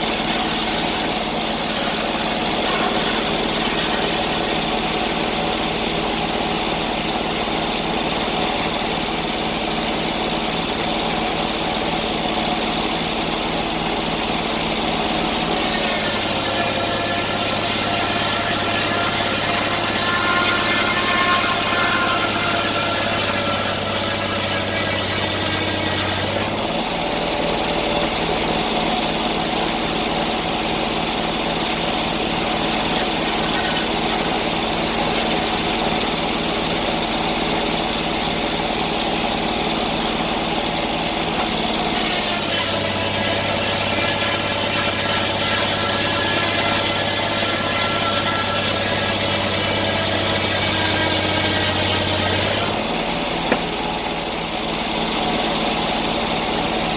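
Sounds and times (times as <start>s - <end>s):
sawmill engine running: 0.0s - 56.9s.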